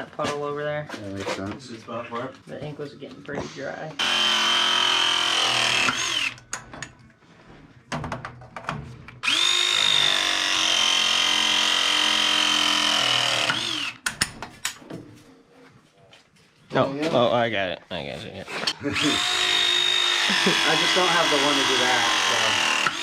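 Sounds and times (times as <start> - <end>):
power drill whining: 4.0 - 6.6, 9.2 - 14.1, 18.5 - 23.0.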